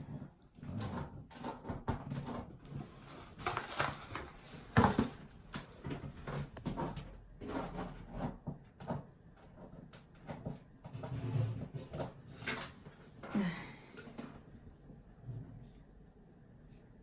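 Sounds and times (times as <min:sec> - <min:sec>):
packaging rustling: 0:03.0 - 0:06.5.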